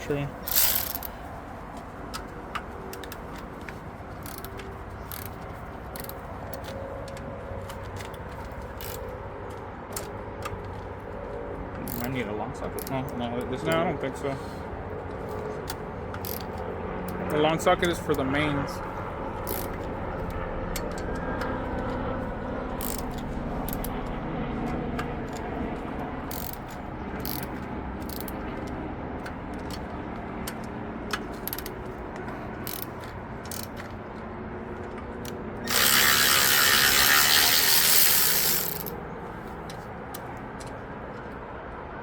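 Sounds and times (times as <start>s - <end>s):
hand ratchet clicking: 0.4s - 1.1s, 4.2s - 5.4s, 6.0s - 6.7s, 8.8s - 9.0s, 11.8s - 12.2s, 15.7s - 18.0s, 19.4s - 19.9s, 22.8s - 24.0s, 26.3s - 28.4s, 31.1s - 31.8s, 32.6s - 33.9s, 35.6s - 38.9s.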